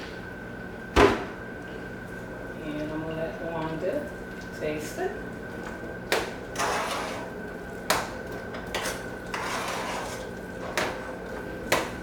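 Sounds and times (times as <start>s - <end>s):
spoon scraping dish: 8.8s - 10.3s.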